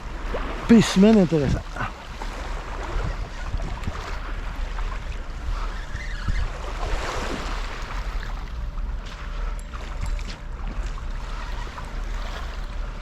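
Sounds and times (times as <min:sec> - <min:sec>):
sea waves splashing: 0:00.0 - 0:13.0
wind rumbling on microphone: 0:00.0 - 0:13.0.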